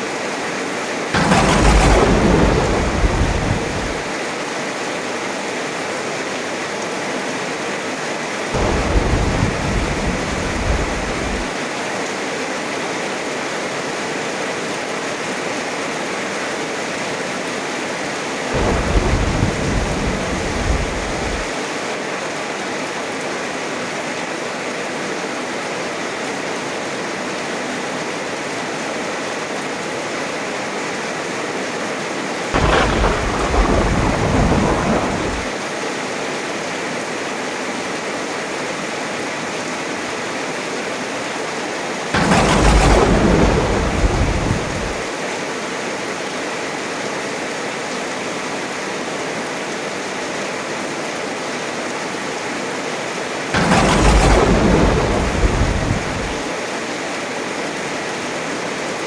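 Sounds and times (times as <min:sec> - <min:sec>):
heavy rain falling: 0:00.1 - 0:04.8, 0:08.2 - 0:12.4, 0:16.0 - 0:24.3, 0:29.3 - 0:37.3, 0:39.4 - 0:59.0
thunder rolling: 0:01.2 - 0:04.2, 0:08.6 - 0:11.6, 0:18.6 - 0:21.6, 0:32.6 - 0:35.6, 0:42.2 - 0:45.1, 0:53.6 - 0:56.6.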